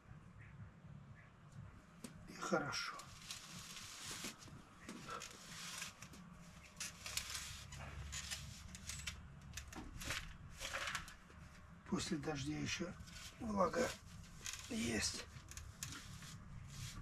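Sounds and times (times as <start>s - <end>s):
planting tool scraping soil: 3.1s - 4.4s, 13.0s - 17.0s.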